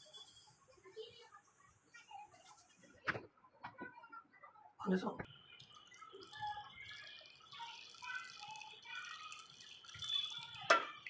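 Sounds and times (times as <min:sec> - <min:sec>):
liquid dripping and trickling: 0:05.2 - 0:11.0.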